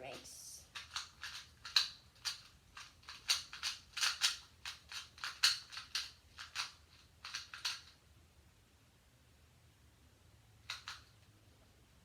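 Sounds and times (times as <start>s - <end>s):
puzzle cube clicking: 0.7s - 8.0s, 10.7s - 11.2s.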